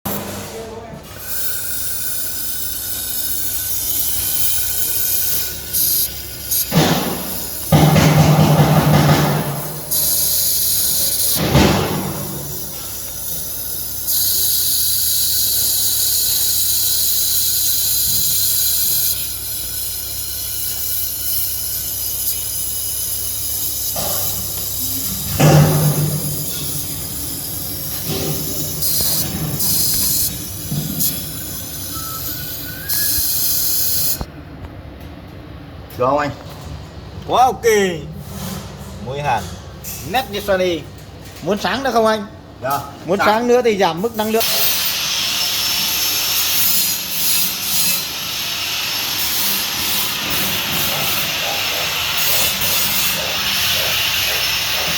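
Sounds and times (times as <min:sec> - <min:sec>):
shielding gas hissing in bursts: 0:01.1 - 0:34.3, 0:44.2 - 0:54.9.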